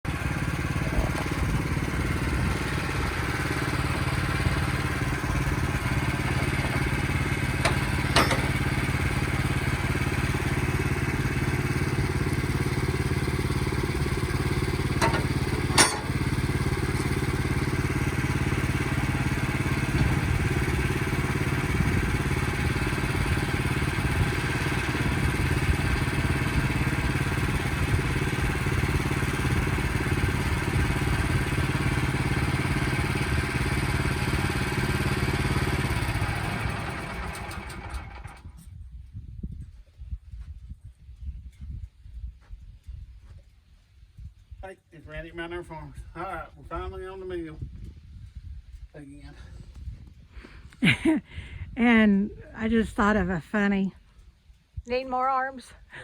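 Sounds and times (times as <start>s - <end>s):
sawmill engine running: 0.1s - 38.5s.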